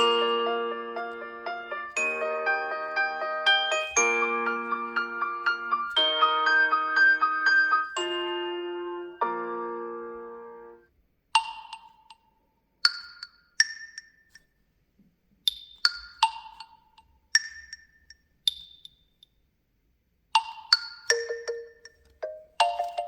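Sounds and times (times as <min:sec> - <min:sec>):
bell-like mallet ringtone: 0:00.0 - 0:09.6, 0:21.1 - 0:23.0.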